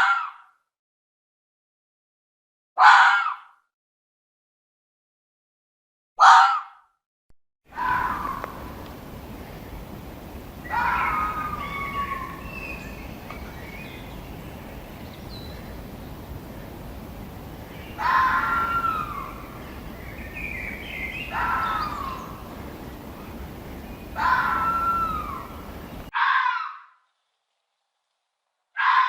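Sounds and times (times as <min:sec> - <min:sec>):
fox calling: 0:07.7 - 0:09.4, 0:10.0 - 0:15.9, 0:17.6 - 0:27.0, 0:28.8 - 0:29.0
steady background hiss: 0:07.7 - 0:26.1.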